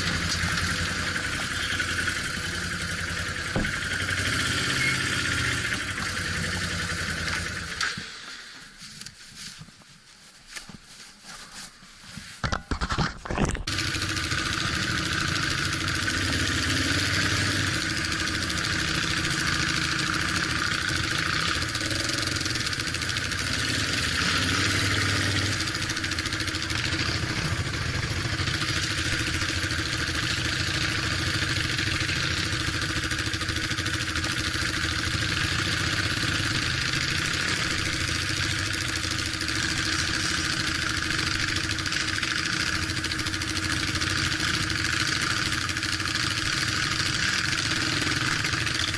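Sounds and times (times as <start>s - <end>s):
off-road vehicle engine running: 0.0s - 8.6s, 12.6s - 48.9s.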